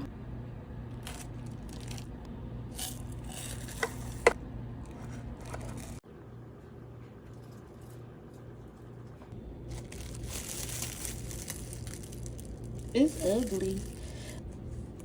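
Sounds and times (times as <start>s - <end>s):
low hum: 0.0s - 15.0s
food scraping and rustling: 2.8s - 6.0s, 9.7s - 15.0s.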